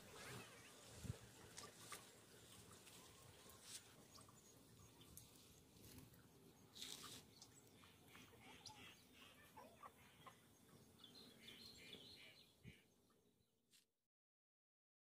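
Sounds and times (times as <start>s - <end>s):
chickens clucking: 7.8s - 10.5s.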